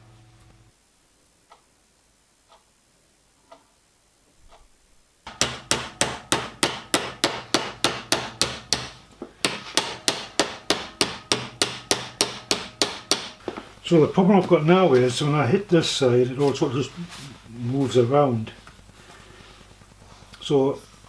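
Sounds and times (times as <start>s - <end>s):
hammer beating copper sheet: 5.3s - 13.4s.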